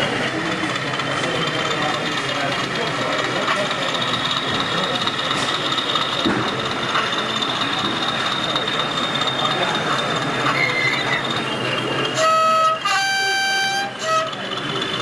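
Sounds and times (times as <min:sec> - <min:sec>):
two-tone train horn: 0:12.1 - 0:14.5.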